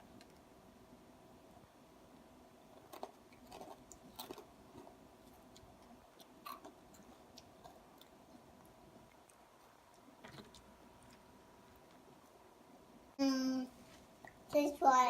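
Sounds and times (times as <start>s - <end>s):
chewing crunchy cereal: 2.8s - 12.1s.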